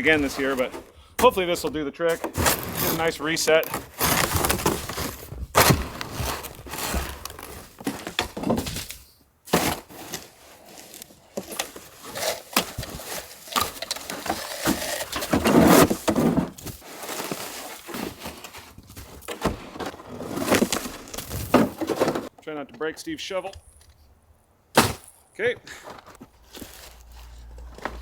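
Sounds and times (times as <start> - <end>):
snow shovel scraping snow: 0.0 - 1.5, 2.1 - 8.2, 9.5 - 18.7, 25.7 - 28.0
snow thudding: 0.0 - 8.9.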